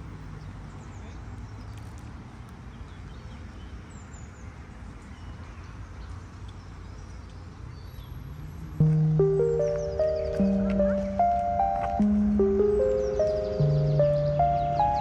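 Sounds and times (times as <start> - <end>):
low outdoor rumble: 8.8 - 15.0
music: 8.8 - 15.0
faint bird chirps: 8.9 - 15.0.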